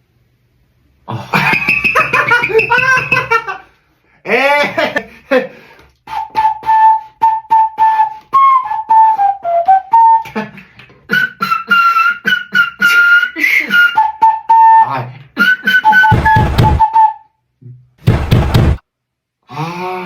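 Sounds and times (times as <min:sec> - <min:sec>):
whistle-like flute melody: 0:01.6 - 0:03.3, 0:06.1 - 0:17.4
beatbox kick and snare clicks: 0:16.0 - 0:16.9, 0:18.0 - 0:18.8.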